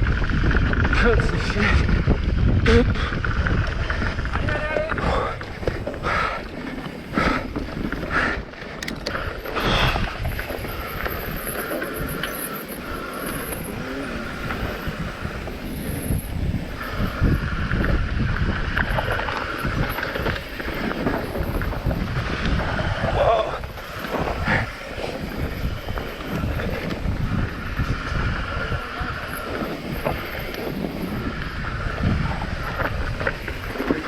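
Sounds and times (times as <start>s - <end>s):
bike rattle and tyre noise: 0.0s - 34.0s
wind buffeting microphone: 0.0s - 34.0s.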